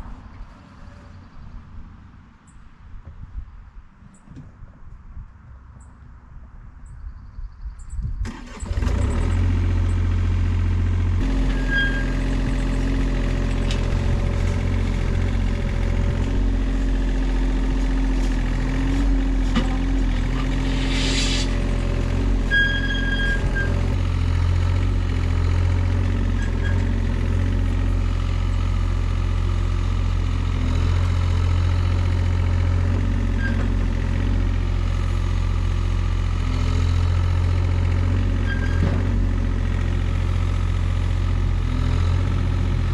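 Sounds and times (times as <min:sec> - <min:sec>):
engine running steadily: 0:08.2 - 0:42.9
short high squeaks: 0:11.3 - 0:12.3, 0:19.8 - 0:21.7, 0:22.4 - 0:24.0, 0:26.4 - 0:26.9, 0:38.4 - 0:38.9
brief hiss: 0:20.6 - 0:21.6.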